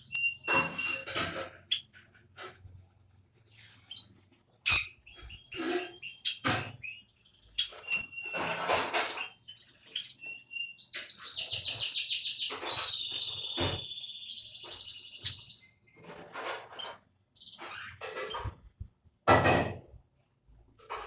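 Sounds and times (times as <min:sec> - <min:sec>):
sparrow singing: 0:04.7 - 0:07.0, 0:07.6 - 0:16.0.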